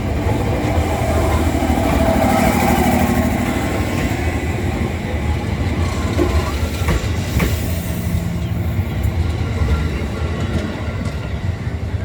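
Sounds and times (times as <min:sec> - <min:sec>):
electric train rumbling on rails: 0:00.0 - 0:12.0.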